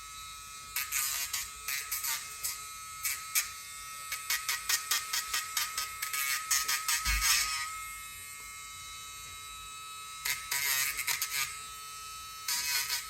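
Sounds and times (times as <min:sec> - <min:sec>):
nail grinder whining: 0:00.6 - 0:08.1, 0:10.2 - 0:11.7, 0:12.4 - 0:13.0.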